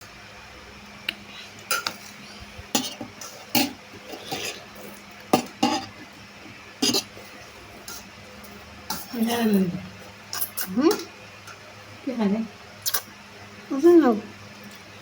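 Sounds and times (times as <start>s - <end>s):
cutlery clinking on dishes: 2.8s - 4.6s, 5.3s - 5.9s, 6.8s - 7.1s.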